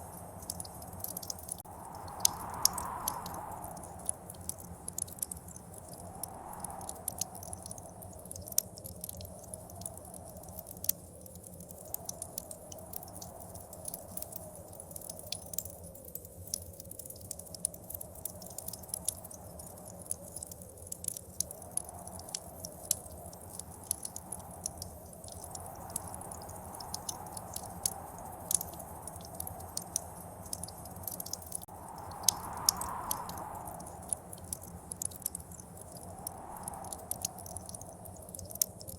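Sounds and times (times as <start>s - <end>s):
blizzard wind gusting: 0.0s - 8.2s, 23.2s - 38.2s
fireplace crackling and popping: 0.0s - 38.9s.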